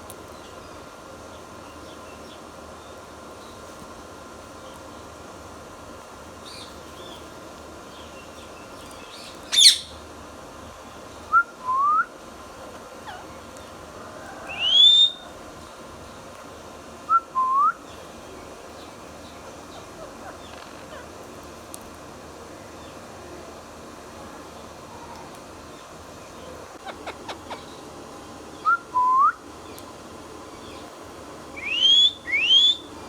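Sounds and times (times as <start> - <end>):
parakeet shrieking: 9.5 - 10.0
parakeet whistling: 9.5 - 10.0, 14.6 - 15.2, 31.6 - 32.9.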